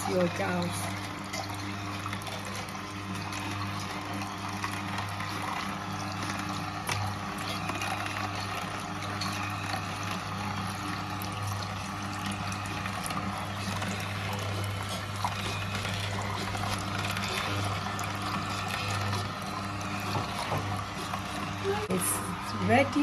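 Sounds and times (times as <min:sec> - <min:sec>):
juice trickling: 0:00.0 - 0:23.0
juicer motor humming: 0:00.0 - 0:23.0.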